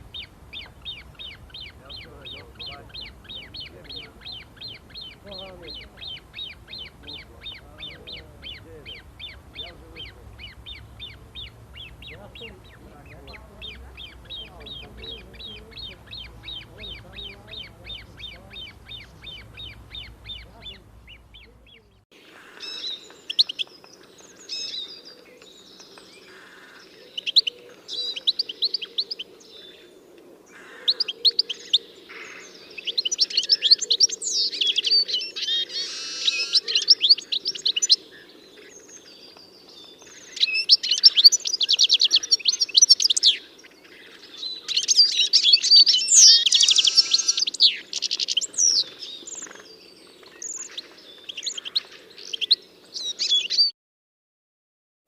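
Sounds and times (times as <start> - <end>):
faint low hum: 0.0 - 22.0
songbird trilling: 0.0 - 53.7.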